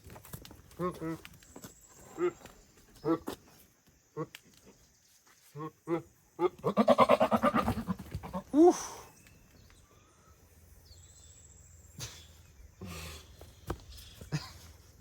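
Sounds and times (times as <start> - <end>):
faint outdoor background: 0.0 - 15.0.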